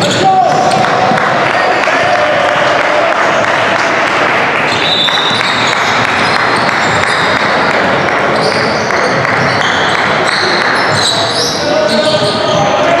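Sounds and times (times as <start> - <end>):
basketball dribbling on gym floor: 0.0 - 2.2, 4.7 - 11.3
short high squeaks: 8.4 - 12.8.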